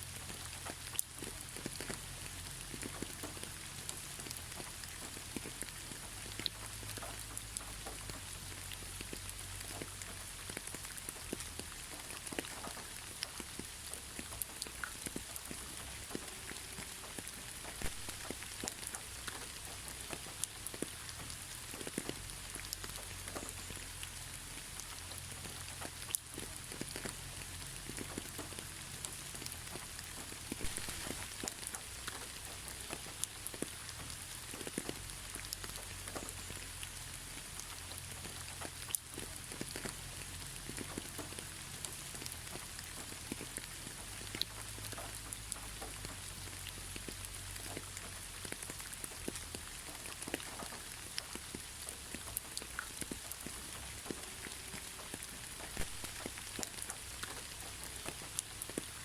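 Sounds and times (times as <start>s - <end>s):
raindrops pattering: 0.0s - 59.0s
steady rain hiss: 0.0s - 59.0s.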